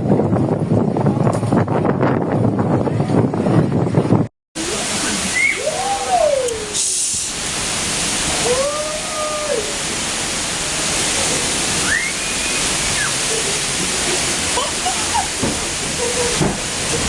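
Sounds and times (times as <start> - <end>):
hurricane wind and rain: 0.0 - 17.0
voice-like whistles: 5.0 - 7.2, 11.8 - 13.2.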